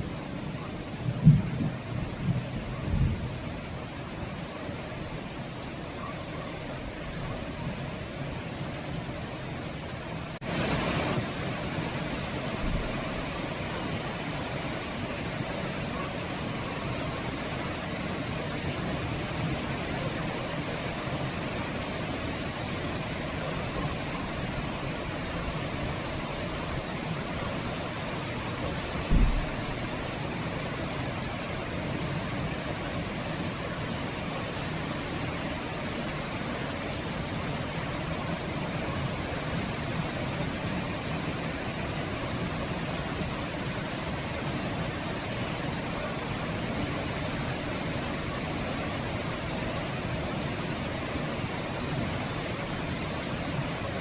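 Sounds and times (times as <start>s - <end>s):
steady rainfall: 0.0s - 54.0s
short low thump: 29.0s - 29.8s.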